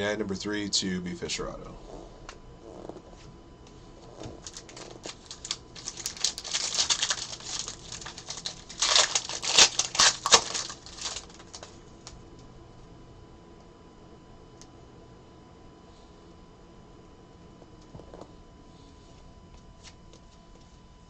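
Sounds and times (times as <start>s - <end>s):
cards and foil wrappers crinkling: 4.2s - 12.2s.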